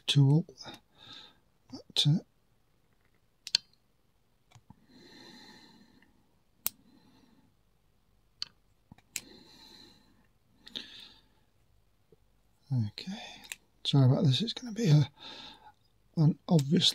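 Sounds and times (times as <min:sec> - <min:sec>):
person breathing out: 0:09.2 - 0:11.4.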